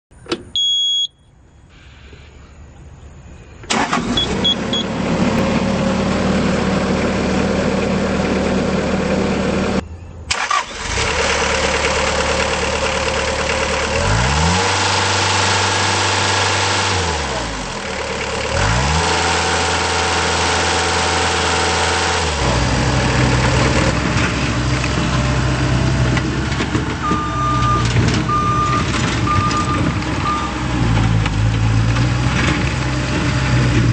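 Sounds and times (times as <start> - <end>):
warning beep: 0.4 - 1.3, 4.2 - 4.9, 27.0 - 30.6
repeating beep: 0.5 - 1.3, 4.2 - 4.9
diesel engine running: 3.7 - 33.9.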